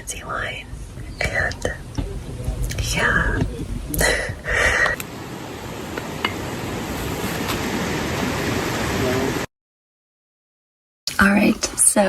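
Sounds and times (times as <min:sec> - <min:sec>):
steady rushing noise: 0:00.0 - 0:09.5.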